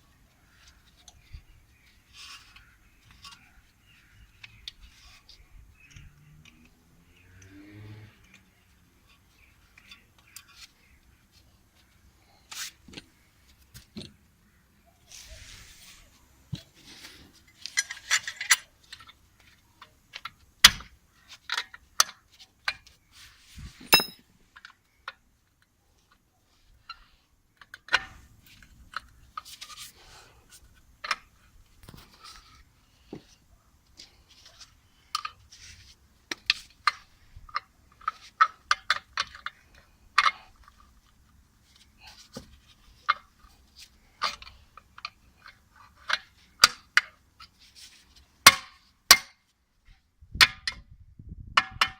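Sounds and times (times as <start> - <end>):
metal tools clinking: 23.8 - 24.3.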